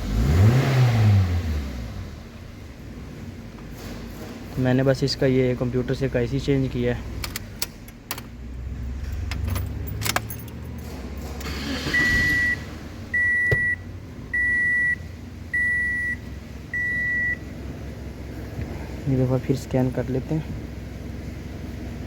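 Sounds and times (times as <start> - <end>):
car engine running: 0.0 - 22.0
electronic warning chime beeping: 12.0 - 13.8.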